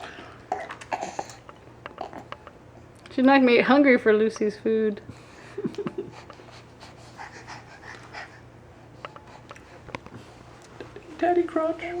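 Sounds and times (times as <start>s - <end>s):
toddler breathing and eating: 0.0s - 2.3s, 5.1s - 11.0s.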